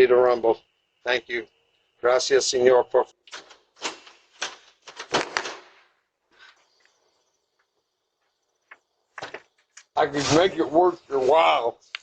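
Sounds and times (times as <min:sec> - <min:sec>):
faint high steady tone: 0:00.0 - 0:03.2.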